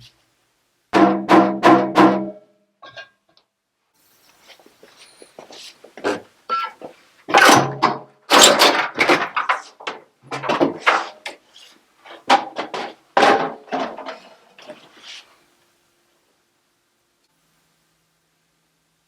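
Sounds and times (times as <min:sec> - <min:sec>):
knocks and clatters of machine parts: 0:05.9 - 0:14.9.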